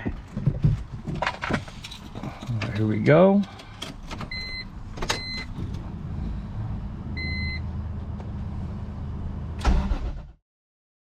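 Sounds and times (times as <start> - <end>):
car engine starting and running: 1.8 - 10.4.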